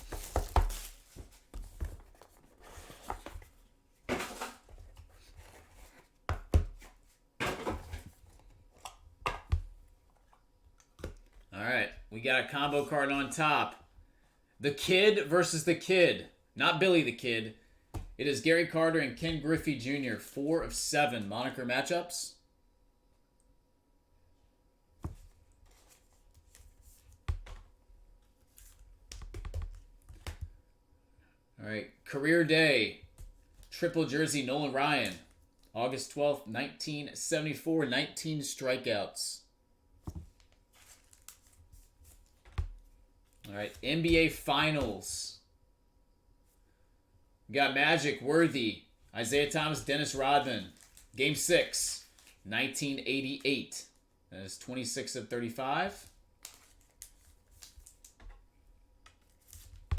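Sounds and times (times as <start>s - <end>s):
cardboard and wrapper rustling: 0.0s - 8.8s, 40.1s - 45.0s, 50.3s - 51.2s.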